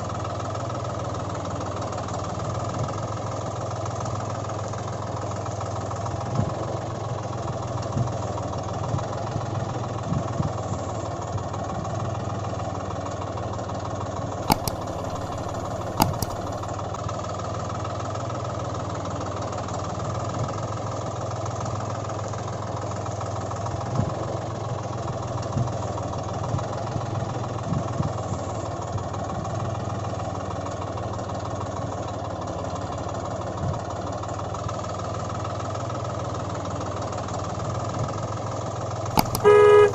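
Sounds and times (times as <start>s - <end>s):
engine idling with knocks: 0.0s - 39.9s
sharp clicks: 14.5s - 16.7s, 39.2s - 39.9s.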